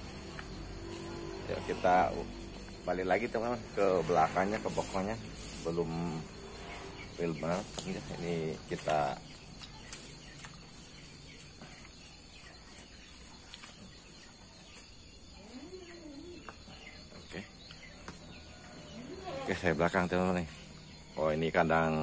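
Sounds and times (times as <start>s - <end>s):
high-pitched background hiss: 0.0s - 11.7s
small birds chirping: 0.0s - 22.0s.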